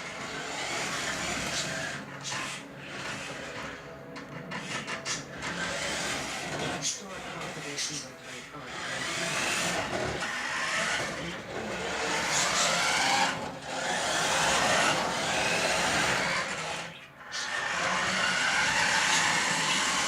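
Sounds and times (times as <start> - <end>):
toy car electric motor whining: 0.0 - 20.0.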